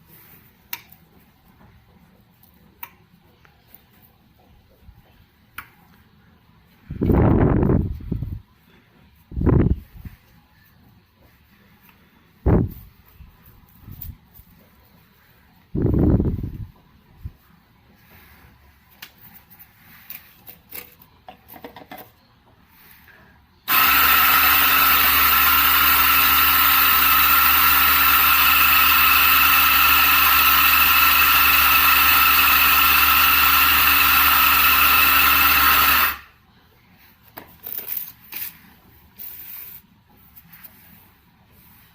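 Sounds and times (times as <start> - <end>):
coffee grinder motor whine: 23.7 - 36.3.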